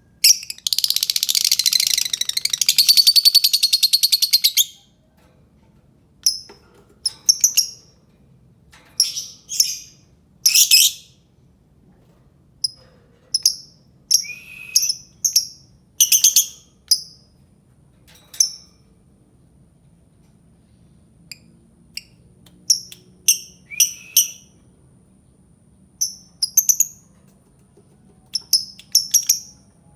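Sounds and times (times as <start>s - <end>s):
lovebird chirping: 0.2s - 4.9s, 9.0s - 11.1s, 13.4s - 17.1s.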